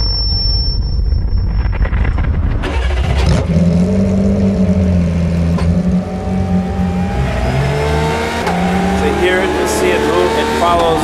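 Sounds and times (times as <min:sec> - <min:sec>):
race car engine running: 0:02.3 - 0:11.0.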